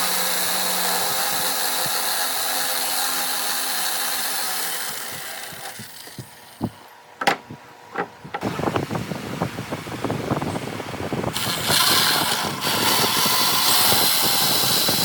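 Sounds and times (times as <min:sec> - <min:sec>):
sharp knocks on wood: 0:07.2 - 0:08.5
woodworking power tool winding down: 0:11.4 - 0:15.0.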